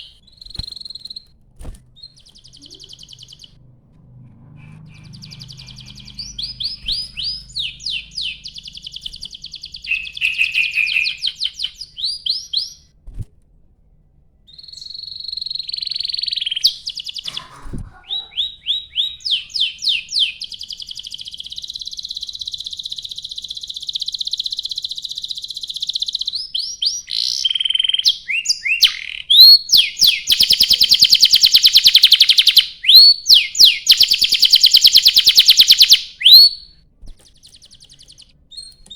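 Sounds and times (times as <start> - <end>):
canary singing: 0.0 - 12.9, 14.5 - 38.9.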